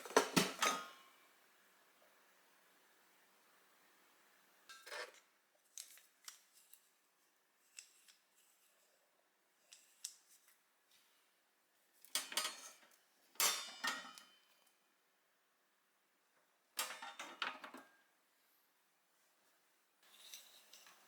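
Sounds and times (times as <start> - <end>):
kitchen utensils clattering: 0.0 - 1.1, 12.2 - 14.3.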